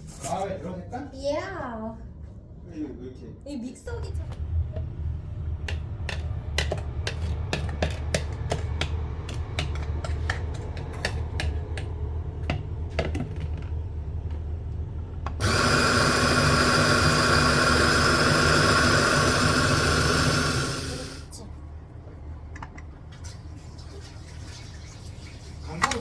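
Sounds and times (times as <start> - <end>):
coffee grinder motor running: 15.3 - 21.3.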